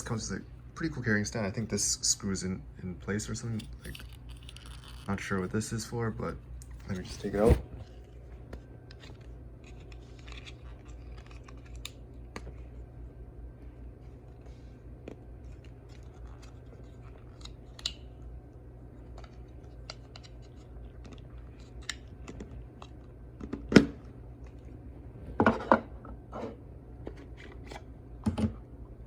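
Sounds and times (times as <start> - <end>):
plastic parts clicking and scraping: 3.5 - 5.3.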